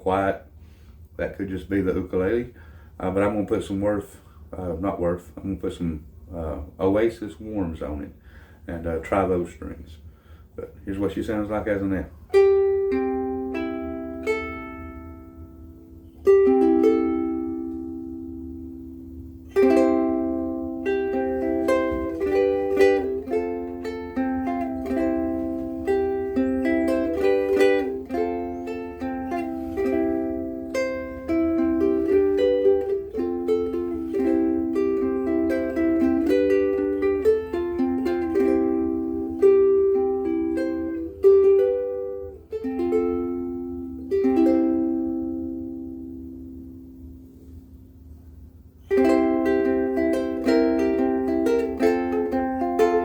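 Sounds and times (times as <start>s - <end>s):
ukulele chords and notes: 11.8s - 53.0s.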